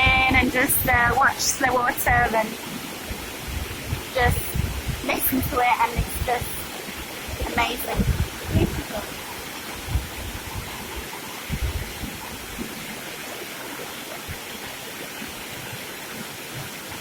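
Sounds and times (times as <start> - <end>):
river water rushing over stones: 0.0 - 17.0
low thumps: 3.1 - 6.7, 7.3 - 12.8.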